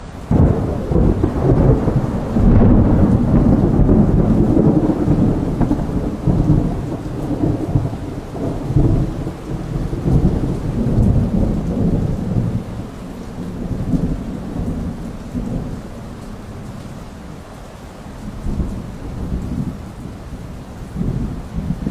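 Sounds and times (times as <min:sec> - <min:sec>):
rain: 0:00.0 - 0:21.9
rolling thunder rumbles: 0:00.0 - 0:21.9.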